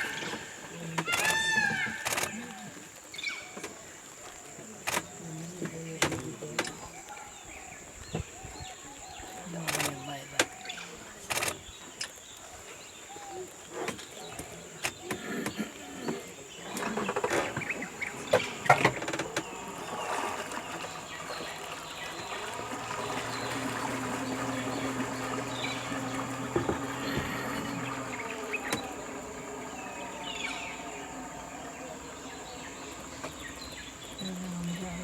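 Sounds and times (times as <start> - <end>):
insects droning: 0.0 - 35.0
sharp clicks: 1.0 - 2.5, 4.8 - 5.2, 9.7 - 10.6, 11.3 - 12.2
steady low buzz: 19.6 - 35.0.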